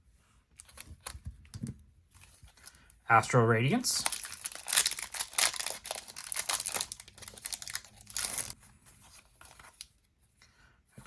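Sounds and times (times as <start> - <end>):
foil wrapper crinkling and ripping: 4.0 - 8.6.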